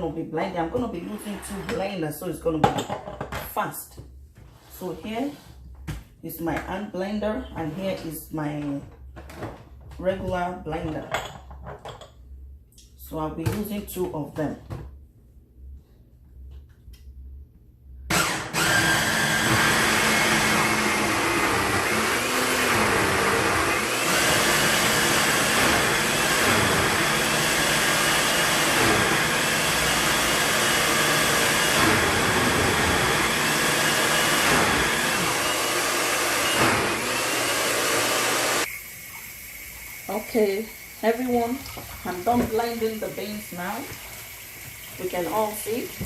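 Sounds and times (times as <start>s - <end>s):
electric blender motor running: 18.1s - 46.0s.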